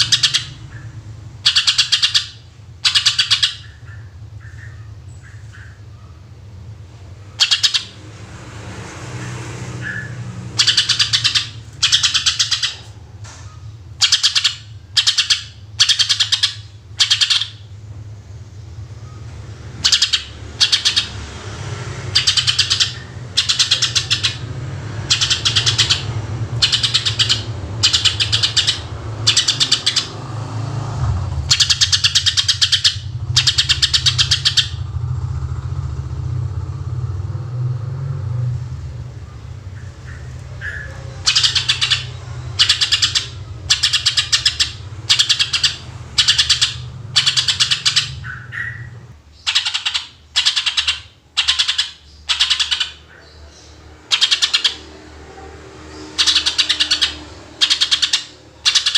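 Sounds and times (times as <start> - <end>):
bird singing trilled phrases: 0.0 - 6.3, 7.3 - 8.0, 9.8 - 17.8, 18.5 - 21.2, 22.1 - 30.2, 31.4 - 35.0, 39.2 - 55.0, 55.9 - 58.9
steady low hum: 0.0 - 49.5.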